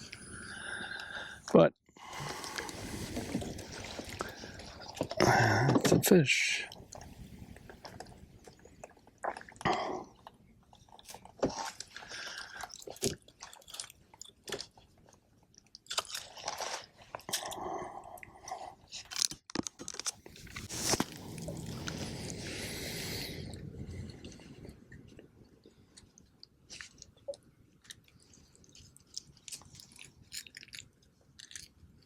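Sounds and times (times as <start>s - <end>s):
rush of noise: 20.4s - 24.6s.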